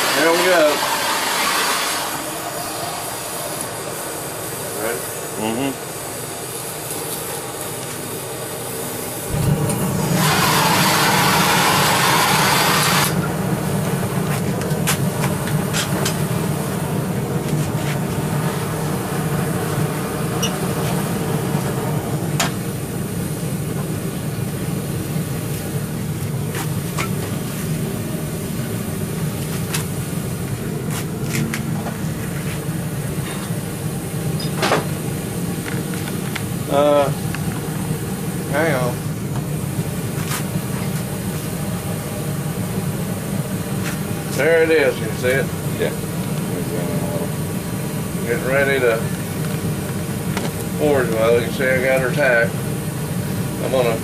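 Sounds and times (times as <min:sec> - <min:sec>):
loud hiss: 0:00.0 - 0:14.4, 0:15.0 - 0:42.8
forge rumbling: 0:09.3 - 0:12.7.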